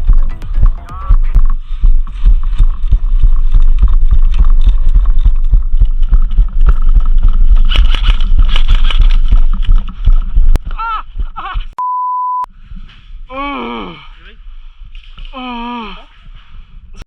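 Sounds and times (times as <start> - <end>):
low rumble and wind buffeting: 0.0 - 11.7, 16.0 - 17.0.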